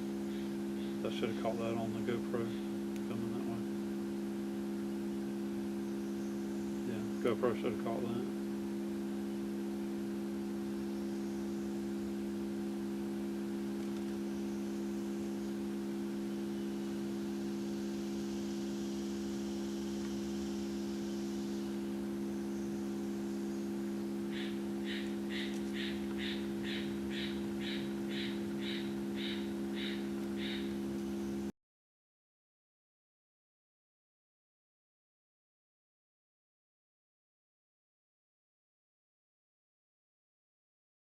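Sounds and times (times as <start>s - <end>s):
low electronic tone hum: 0.0s - 31.5s.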